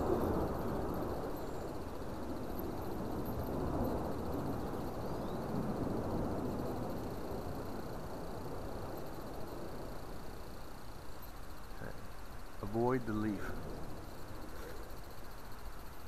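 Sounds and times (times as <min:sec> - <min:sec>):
strong gusty wind: 0:00.0 - 0:11.6.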